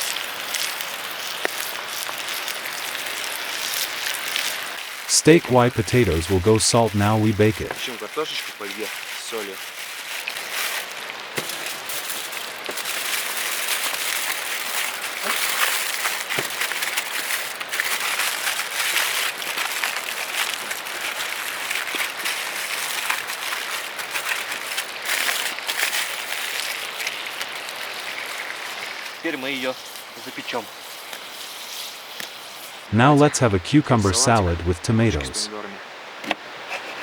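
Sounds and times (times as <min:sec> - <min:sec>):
steak sizzling in a pan: 0:00.0 - 0:05.0.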